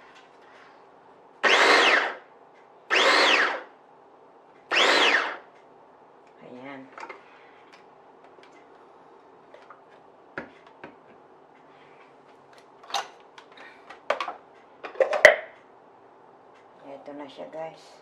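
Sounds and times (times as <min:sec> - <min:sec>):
plastic parts clicking and knocking: 0:12.8 - 0:15.4.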